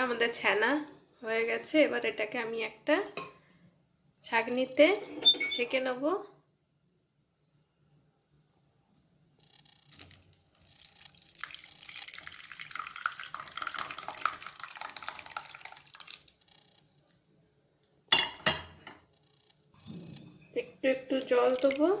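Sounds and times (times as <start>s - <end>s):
liquid splashing and trickling: 10.5s - 16.5s, 21.2s - 22.0s.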